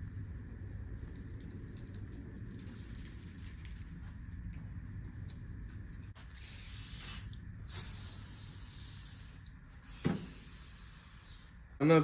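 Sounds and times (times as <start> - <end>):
aerosol can spraying: 6.2 - 11.6.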